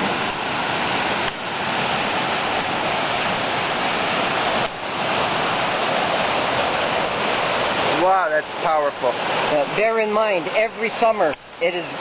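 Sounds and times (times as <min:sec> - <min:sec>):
fast creek water rushing: 0:00.0 - 0:12.0
person speaking: 0:07.9 - 0:12.0.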